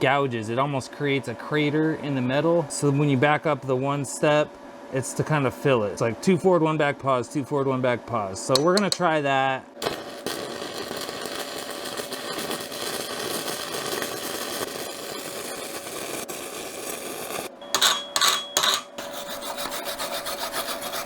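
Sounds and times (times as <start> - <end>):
welding arc crackling: 9.8 - 17.6.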